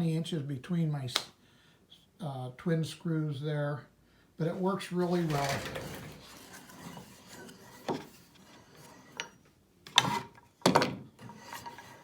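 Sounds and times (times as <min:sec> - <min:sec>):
hands rubbing wooden vise: 0:05.0 - 0:09.3.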